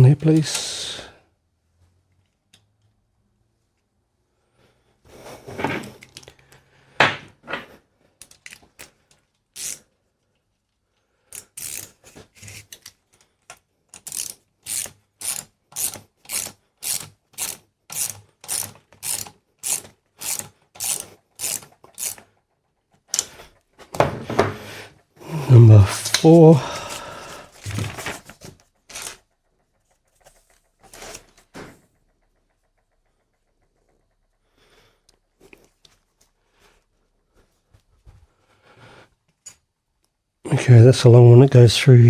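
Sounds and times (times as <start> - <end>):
socket ratchet clicking: 11.3 - 12.9, 13.9 - 22.4.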